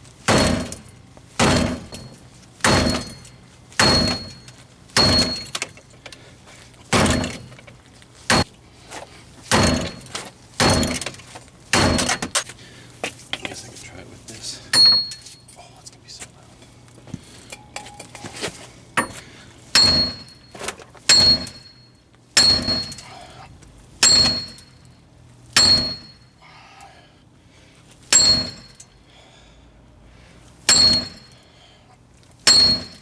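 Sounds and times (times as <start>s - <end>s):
mallet striking metal tool: 0.3s - 4.4s, 5.0s - 5.6s, 7.0s - 7.5s, 9.5s - 11.1s, 11.8s - 12.3s, 19.8s - 20.4s, 21.1s - 21.8s, 22.4s - 23.1s, 24.0s - 24.8s, 25.6s - 26.3s, 28.1s - 28.8s, 30.7s - 31.3s, 32.5s - 33.0s.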